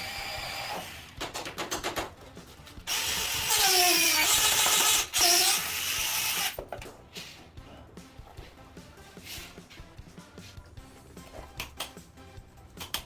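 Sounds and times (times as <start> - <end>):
power tool running: 2.9 - 6.6.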